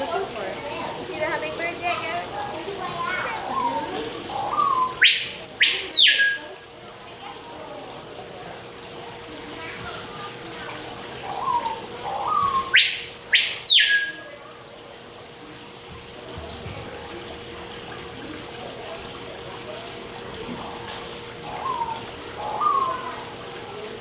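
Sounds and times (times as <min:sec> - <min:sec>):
high bird chirps: 0:04.4 - 0:06.5, 0:11.4 - 0:14.3
loud arching bird whistles: 0:04.5 - 0:06.4, 0:12.3 - 0:14.3.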